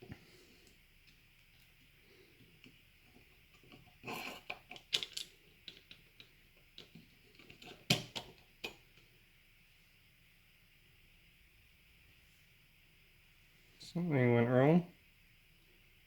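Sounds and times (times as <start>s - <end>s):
plastic parts clicking and tapping: 3.5s - 8.8s.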